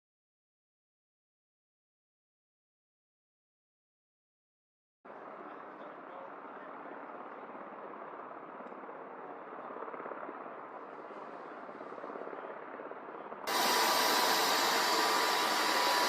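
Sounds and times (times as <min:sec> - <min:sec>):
helicopter rotor and engine: 0:05.2 - 0:16.0.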